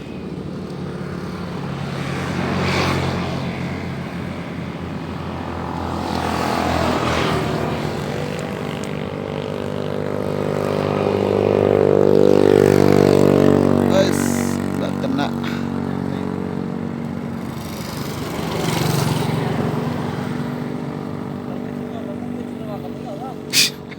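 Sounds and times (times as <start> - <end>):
motor engine running: 7.4 - 23.9.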